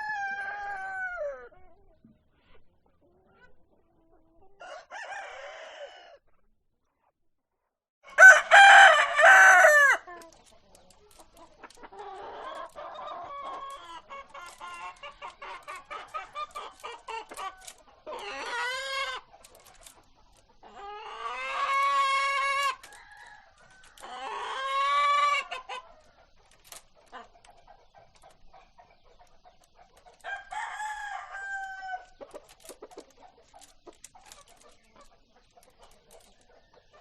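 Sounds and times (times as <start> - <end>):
rooster crowing: 0.0 - 1.5, 4.6 - 6.2, 8.1 - 10.2, 30.2 - 32.1
hens clucking: 0.0 - 6.4, 8.2 - 37.0.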